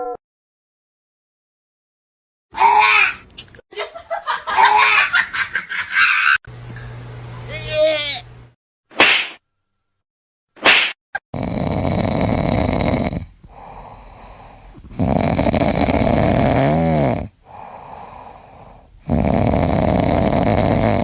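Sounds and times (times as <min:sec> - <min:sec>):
loud snoring: 0:11.3 - 0:21.0.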